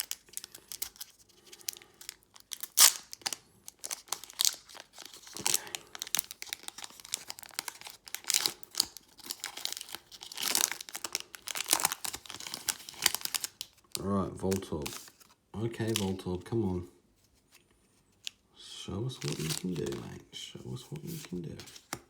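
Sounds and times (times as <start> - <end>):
foil wrapper crinkling and tearing: 0.0 - 16.2, 19.1 - 20.2.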